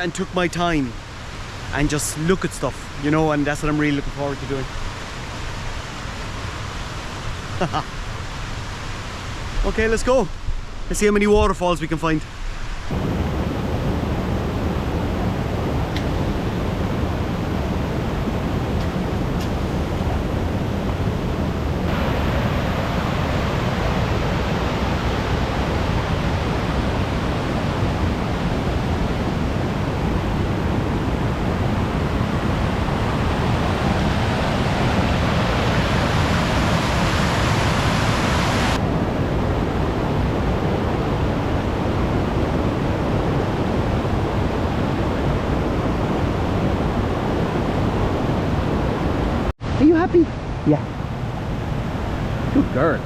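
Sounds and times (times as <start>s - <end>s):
river water roaring: 12.5s - 53.0s.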